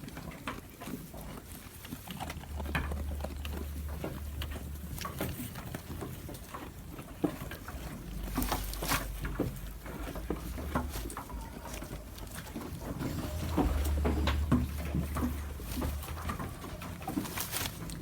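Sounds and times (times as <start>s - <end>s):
goat chewing crunchy food: 0.0s - 18.0s
low rumble: 2.4s - 6.5s, 7.8s - 18.0s.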